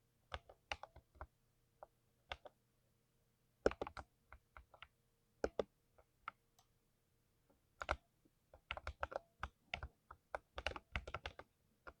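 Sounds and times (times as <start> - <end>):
mechanical keyboard typing: 3.6 - 4.0, 7.8 - 8.0, 8.6 - 12.0.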